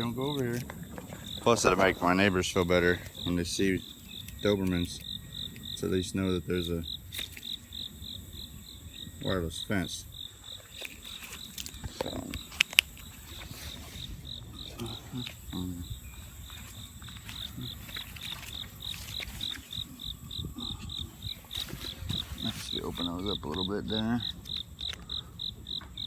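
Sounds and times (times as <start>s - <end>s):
insect chirping: 0.0s - 26.0s.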